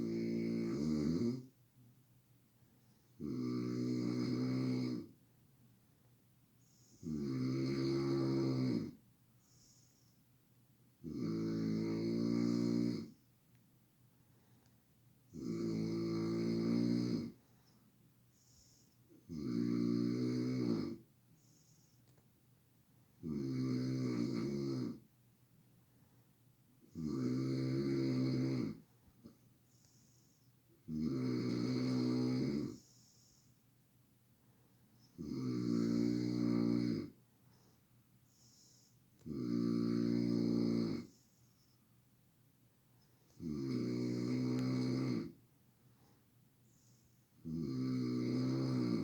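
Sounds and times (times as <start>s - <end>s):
person snoring loudly: 0.0s - 1.4s, 3.2s - 5.1s, 7.0s - 8.9s, 11.0s - 13.1s, 15.4s - 17.4s, 19.3s - 21.0s, 23.2s - 25.0s, 27.0s - 28.8s, 30.9s - 32.8s, 35.2s - 37.1s, 39.2s - 41.1s, 43.4s - 45.3s, 47.4s - 49.0s
quiet breaths: 0.0s - 49.0s.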